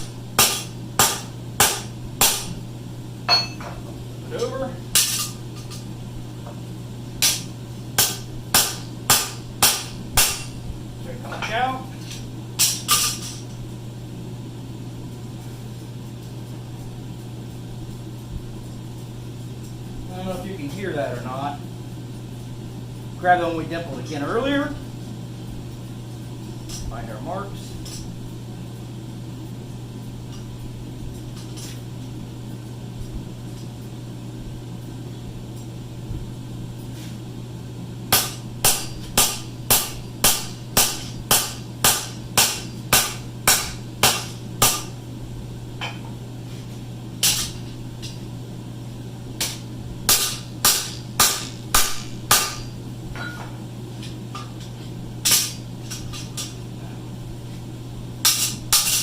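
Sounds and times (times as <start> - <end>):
steady low hum: 0.0 - 59.0
hammer striking steel on anvil: 0.4 - 2.5, 3.3 - 3.8, 7.2 - 10.6, 38.1 - 45.0, 49.4 - 53.5.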